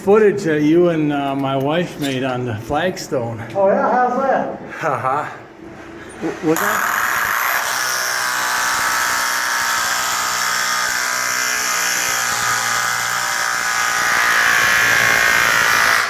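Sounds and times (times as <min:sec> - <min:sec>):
power tool motor whining: 0:06.5 - 0:16.0.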